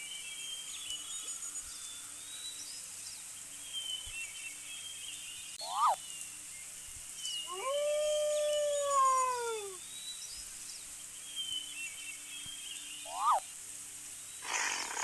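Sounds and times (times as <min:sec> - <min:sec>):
animal howling: 0:07.5 - 0:09.8.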